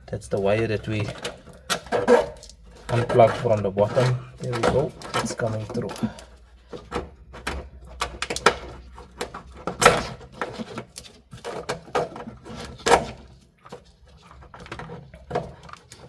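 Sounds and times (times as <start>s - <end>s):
plastic clicks and knocks: 0.9s - 13.8s.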